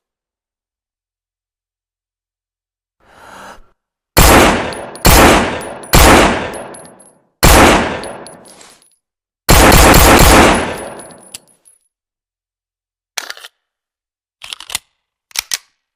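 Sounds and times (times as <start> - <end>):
pistol shots with echo: 4.2 - 8.4, 9.5 - 11.2.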